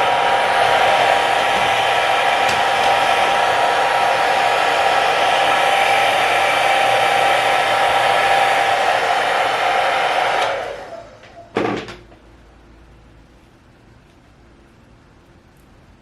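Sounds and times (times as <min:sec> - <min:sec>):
hair dryer blowing: 0:00.0 - 0:11.4.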